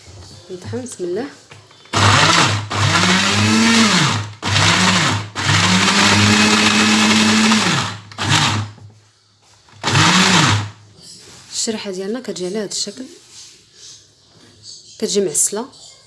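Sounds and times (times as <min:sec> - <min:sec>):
electric food grinder motor whine: 0:01.9 - 0:08.8, 0:09.7 - 0:10.8.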